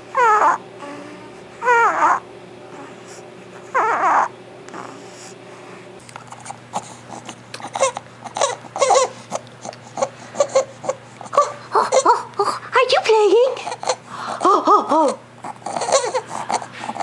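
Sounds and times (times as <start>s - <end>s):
baby squeaky stridor: 7.8s - 9.2s, 15.6s - 17.0s.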